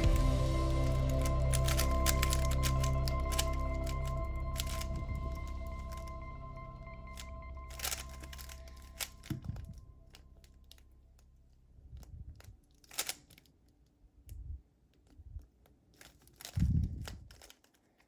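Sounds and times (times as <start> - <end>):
puzzle cube plastic clicks: 0.1 - 6.2, 7.1 - 9.6, 12.6 - 13.6, 15.0 - 18.0.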